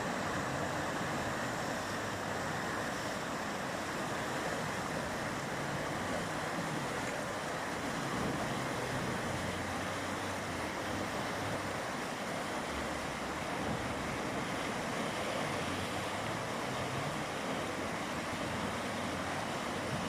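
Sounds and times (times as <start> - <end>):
river water rushing: 0.0 - 20.0.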